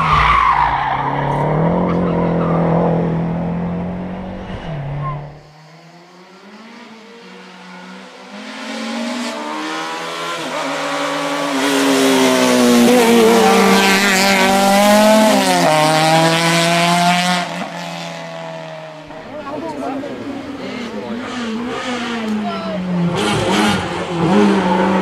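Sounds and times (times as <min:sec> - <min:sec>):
racing car engine passing: 0:00.0 - 0:25.0.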